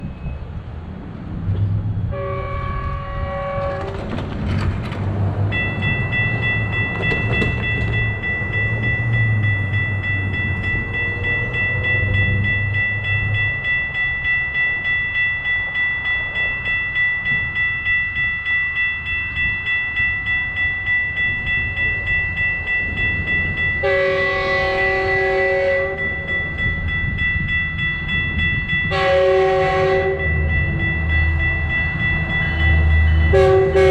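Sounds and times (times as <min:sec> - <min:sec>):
crossing warning bell ringing: 0:01.6 - 0:33.9
locomotive horn blast: 0:02.1 - 0:04.1, 0:23.8 - 0:26.2, 0:28.9 - 0:30.5, 0:33.3 - 0:33.9.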